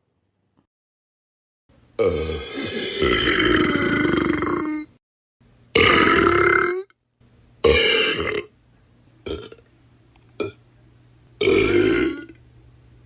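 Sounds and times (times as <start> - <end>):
person burping: 2.0 - 5.0, 5.8 - 7.0, 7.6 - 8.5, 9.3 - 9.6, 10.4 - 10.6, 11.4 - 12.4.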